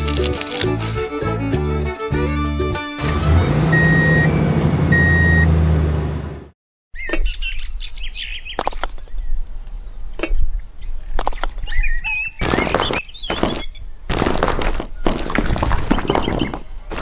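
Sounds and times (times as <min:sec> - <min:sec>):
music: 0:00.0 - 0:04.3
birds chirping: 0:07.0 - 0:17.0.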